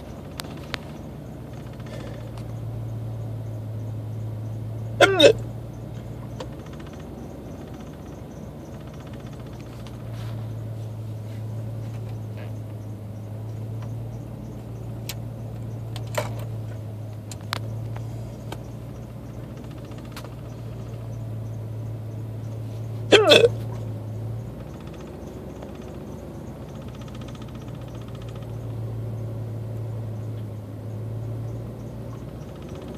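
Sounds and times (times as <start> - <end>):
steady low hum: 0.0 - 32.9
man hiccuping: 5.0 - 5.5, 23.0 - 23.7.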